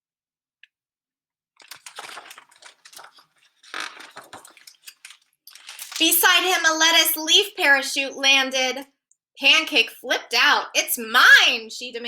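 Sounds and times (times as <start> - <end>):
book pages rustling and turning: 1.6 - 6.2.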